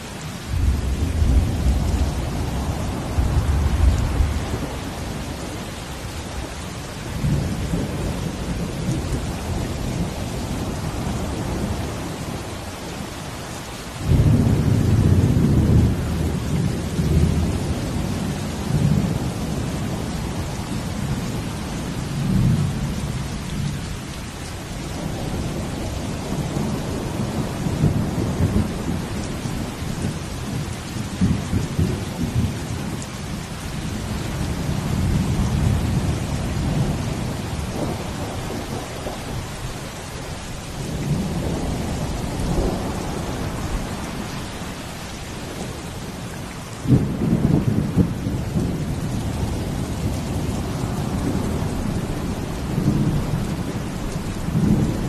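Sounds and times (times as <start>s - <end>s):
ocean waves rumbling: 0.0s - 13.3s, 14.0s - 22.9s, 33.8s - 55.0s
steady falling rain: 0.0s - 55.0s.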